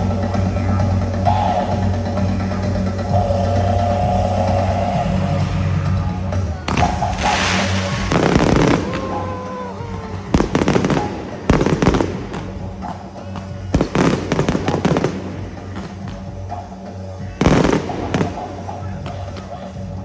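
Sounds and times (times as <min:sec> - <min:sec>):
background music: 0:00.0 - 0:20.0
fireworks crackling: 0:06.6 - 0:19.9
fireworks bangs: 0:06.7 - 0:16.5, 0:17.4 - 0:19.5.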